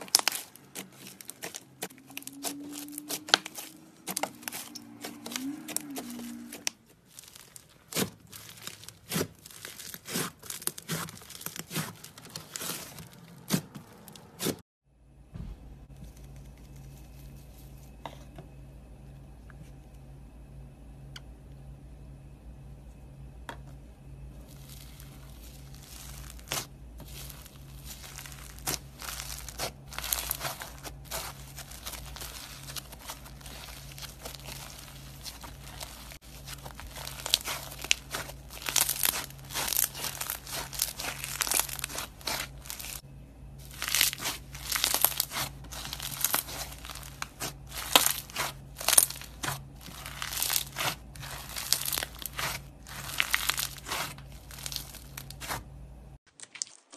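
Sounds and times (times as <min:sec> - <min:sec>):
slime crackling and popping: 0:00.0 - 0:13.6, 0:24.5 - 0:43.0, 0:43.6 - 0:55.6, 0:56.3 - 0:56.9
faint low hum: 0:15.0 - 0:56.2.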